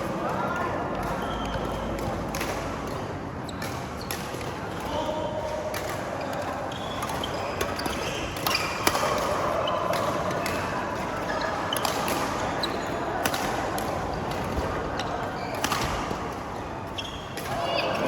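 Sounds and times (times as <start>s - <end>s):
background din in hall: 0.0s - 18.0s
rackets striking shuttlecock: 5.6s - 18.0s.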